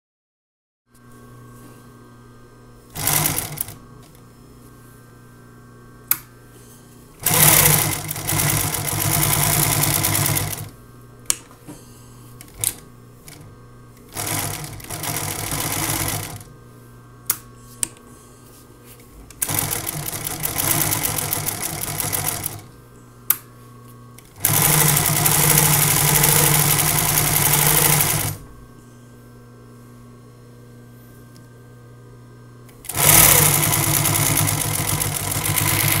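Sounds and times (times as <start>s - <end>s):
motor hum: 1.1s - 18.3s, 19.0s - 29.1s, 30.9s - 36.0s
sewing machine stitching: 2.9s - 3.8s, 7.2s - 10.7s, 14.1s - 16.4s, 19.4s - 22.6s, 24.4s - 28.4s, 32.9s - 36.0s.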